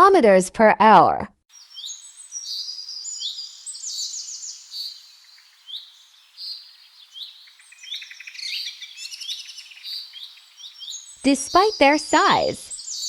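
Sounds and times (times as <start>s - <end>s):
small birds chirping: 1.5s - 13.0s.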